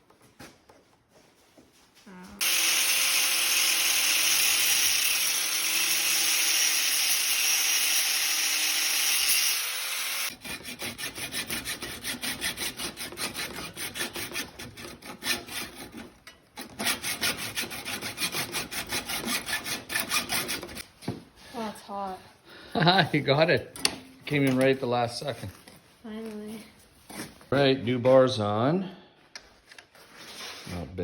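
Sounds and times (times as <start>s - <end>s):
power tool running: 2.4s - 10.4s.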